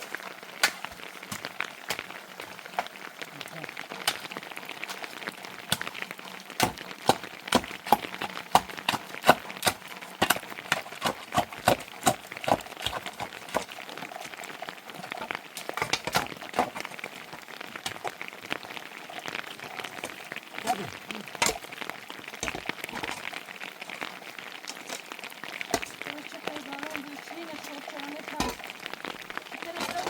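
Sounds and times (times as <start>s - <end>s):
rain hiss: 0.0s - 30.0s
sharp taps and knocks: 6.6s - 13.8s, 15.0s - 17.0s, 21.4s - 21.7s.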